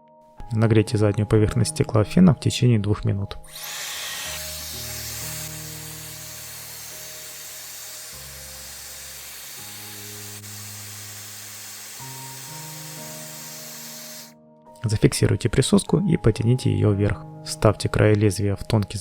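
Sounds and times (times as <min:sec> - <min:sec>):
soft background music: 0:00.0 - 0:19.0
hot-air gun hissing: 0:03.5 - 0:14.4.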